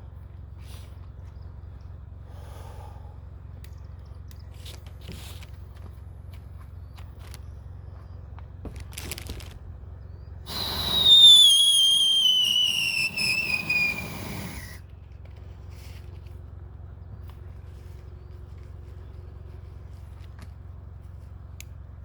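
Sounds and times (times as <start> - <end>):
whistling firework: 10.5 - 14.8.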